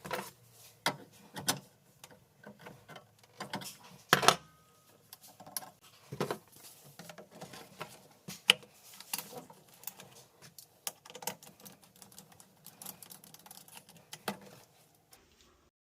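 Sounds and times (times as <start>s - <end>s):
tools and parts clicking: 7.0s - 15.0s.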